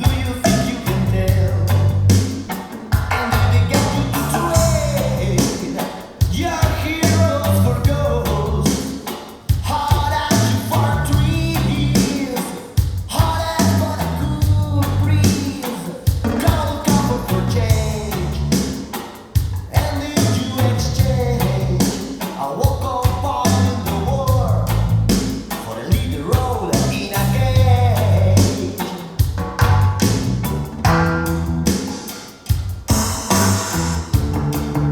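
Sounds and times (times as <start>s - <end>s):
person singing: 0.0s - 1.9s, 2.5s - 18.8s, 19.6s - 24.6s, 25.6s - 29.2s
bass and drums: 0.0s - 34.9s.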